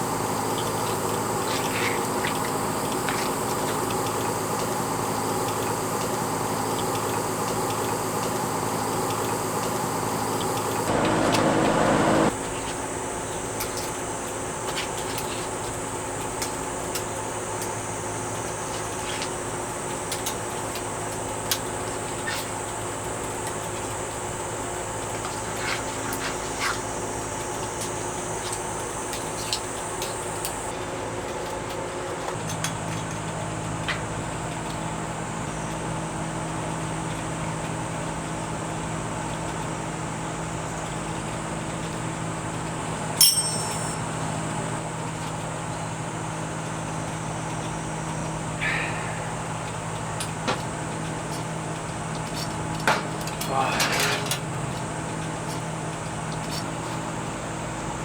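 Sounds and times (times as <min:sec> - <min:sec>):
steady machine hum: 0:00.0 - 0:58.0.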